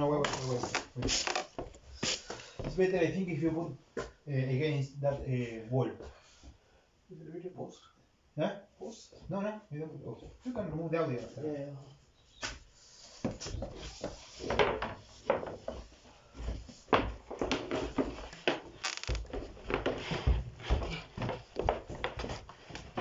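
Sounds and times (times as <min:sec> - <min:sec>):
rustling: 0:18.1 - 0:21.6.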